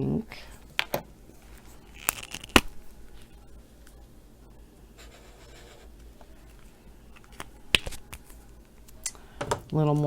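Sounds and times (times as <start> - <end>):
marker scribbling on paper: 5.0 - 6.0.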